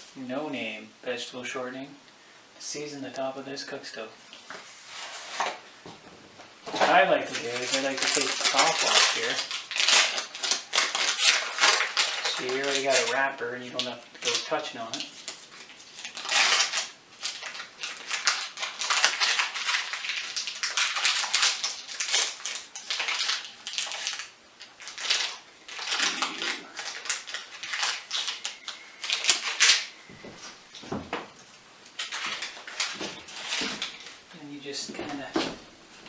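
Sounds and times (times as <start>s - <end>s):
wrapper scraping on stove top: 4.5s - 5.7s, 6.7s - 30.0s, 31.9s - 34.2s.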